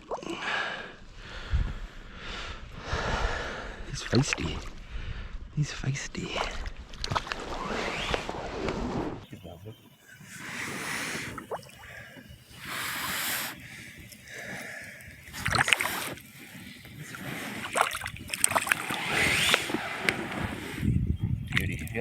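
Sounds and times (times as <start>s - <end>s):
water splashing against raft: 6.4s - 9.1s, 10.2s - 20.9s.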